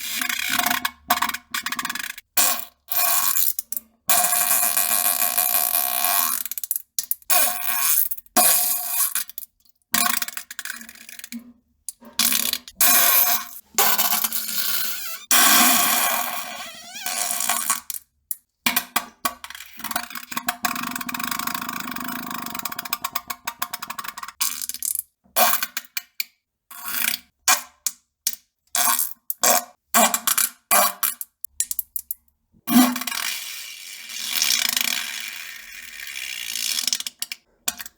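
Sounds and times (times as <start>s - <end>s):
buzzing fart sounds: 14.5s - 17.4s.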